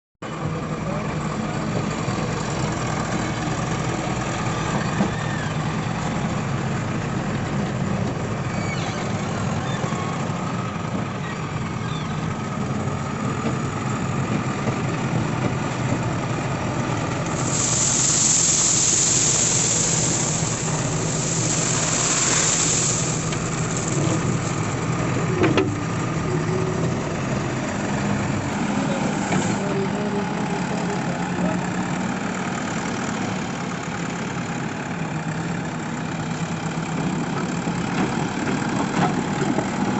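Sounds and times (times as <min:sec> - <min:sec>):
diesel engine running: 0:00.2 - 0:39.9
loud hissing: 0:17.2 - 0:24.8.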